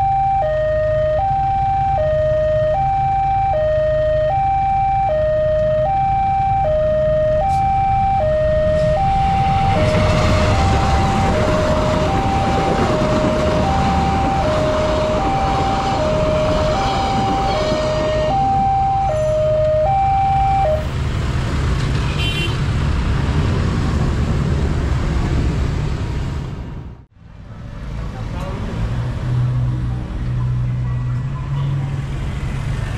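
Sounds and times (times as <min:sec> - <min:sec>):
two-tone crossing warning siren: 0:00.0 - 0:21.0
train rumble: 0:08.7 - 0:19.9.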